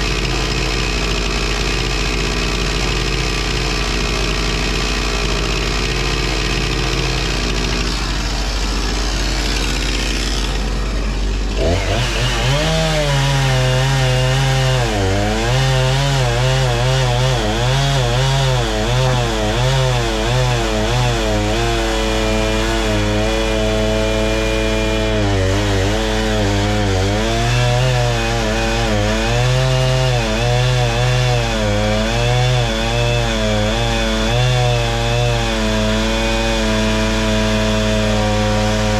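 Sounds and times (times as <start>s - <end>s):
engine running steadily: 0.0s - 13.4s
chainsaw cutting wood: 0.0s - 38.9s.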